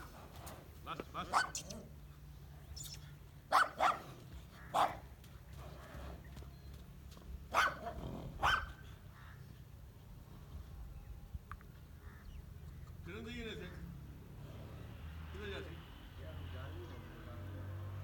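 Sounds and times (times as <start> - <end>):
dog barking: 1.3 - 1.9, 3.5 - 5.0, 7.5 - 8.8.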